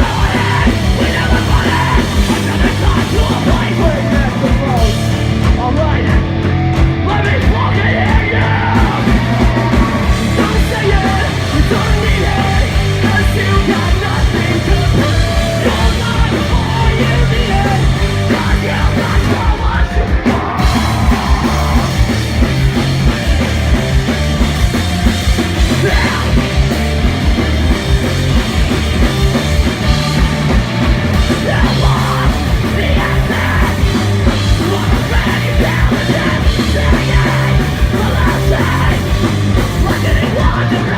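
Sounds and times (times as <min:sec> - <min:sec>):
punk rock band playing: 0:00.0 - 0:40.9
yelled vocals: 0:00.0 - 0:40.9.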